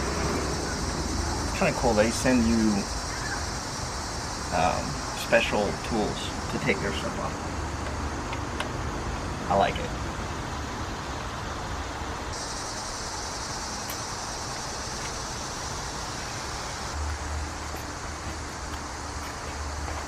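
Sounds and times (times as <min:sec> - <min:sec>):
even high hiss: 0:00.0 - 0:20.0.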